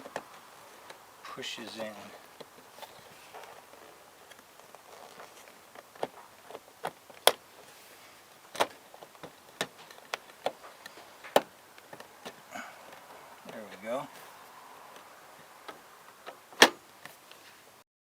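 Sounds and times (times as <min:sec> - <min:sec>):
plastic door handle clicking: 0:15.7 - 0:16.8.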